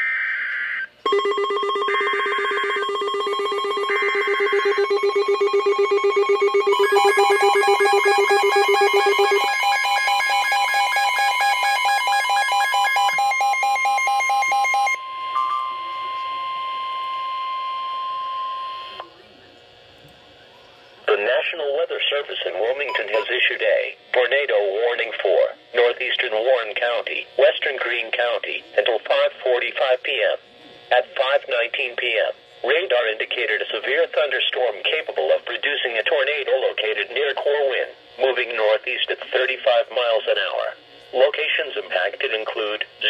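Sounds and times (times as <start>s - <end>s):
pulsing electronic alarm tones: 0.0s - 19.0s
steady alert tone: 1.1s - 15.9s.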